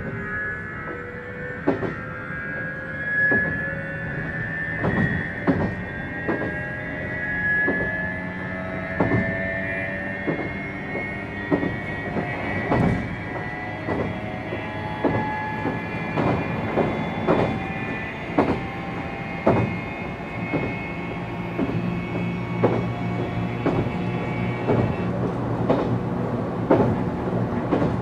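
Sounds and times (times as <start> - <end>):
electric train motor whine: 0.0 - 28.0
jet-like train noise: 0.0 - 28.0
wheels clicking over rail joints: 8.9 - 28.0.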